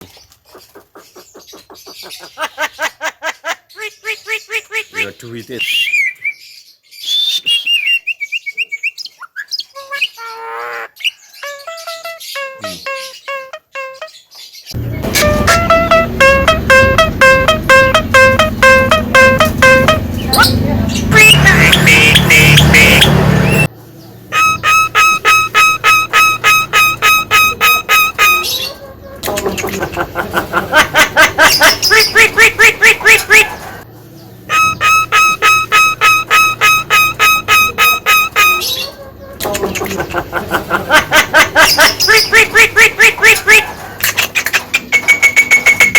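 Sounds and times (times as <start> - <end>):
myna calling: 15.0 - 23.7, 24.3 - 30.2, 34.4 - 40.0.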